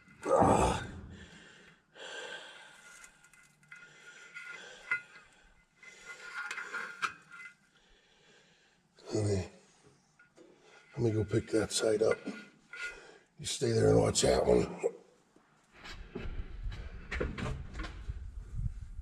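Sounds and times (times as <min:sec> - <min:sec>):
man grunting: 0:00.2 - 0:01.1
man breathing hard: 0:00.9 - 0:02.9.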